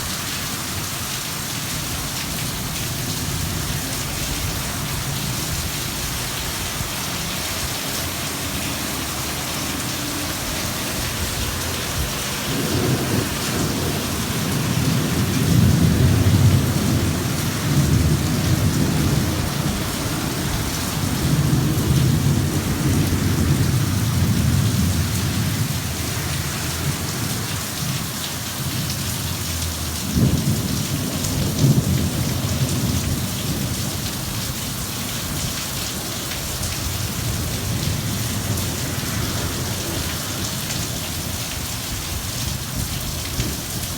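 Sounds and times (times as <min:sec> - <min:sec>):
steady rain falling: 0:00.0 - 0:43.9
rolling thunder rumble: 0:08.4 - 0:25.8, 0:30.0 - 0:35.6.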